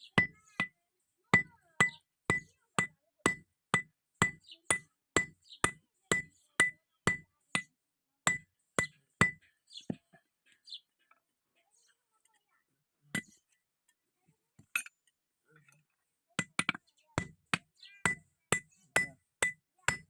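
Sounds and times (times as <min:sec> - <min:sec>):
hammer striking iron on anvil: 0:01.4 - 0:07.7, 0:08.3 - 0:09.4, 0:16.4 - 0:20.0.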